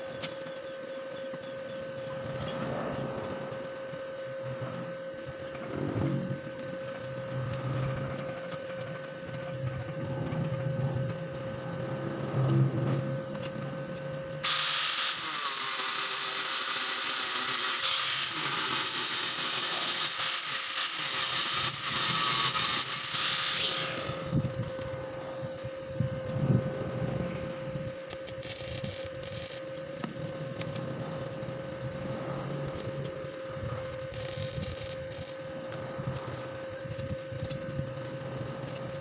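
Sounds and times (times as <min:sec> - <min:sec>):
quiet working noises: 0:00.0 - 0:39.0
power tool running loudly: 0:14.4 - 0:39.0.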